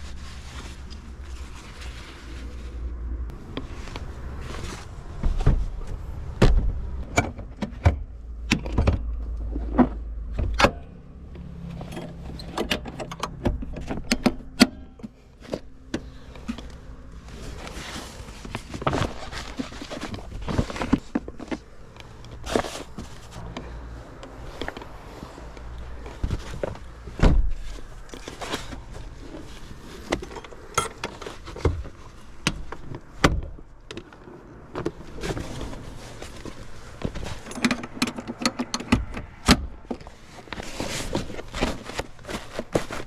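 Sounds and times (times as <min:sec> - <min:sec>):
clicks knocks and clatters: 0:37.0 - 0:40.1.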